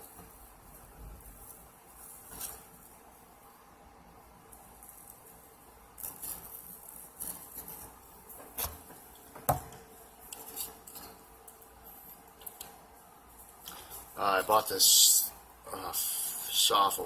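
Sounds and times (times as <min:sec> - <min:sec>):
knock on work surface: 0:09.4 - 0:09.7.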